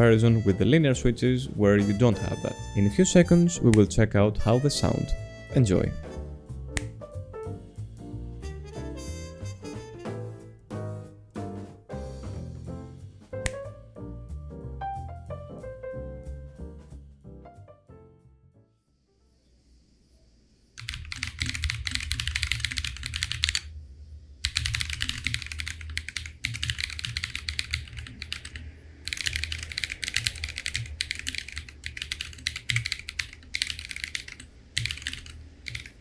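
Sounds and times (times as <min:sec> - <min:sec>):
mechanical keyboard typing: 0:20.8 - 0:23.7, 0:24.4 - 0:36.0.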